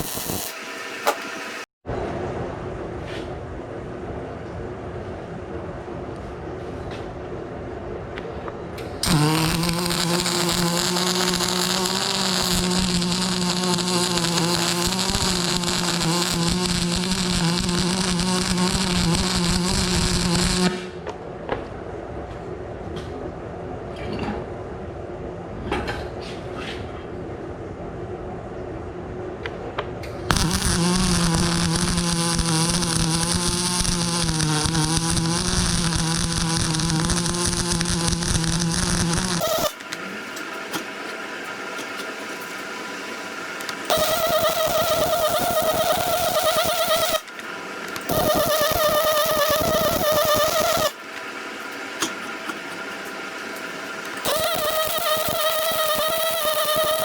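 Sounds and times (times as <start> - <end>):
welding arc crackling: 0.0 - 1.7, 9.0 - 20.8, 30.3 - 57.0
welding machine humming: 0.0 - 1.7, 8.8 - 20.9, 30.2 - 57.0.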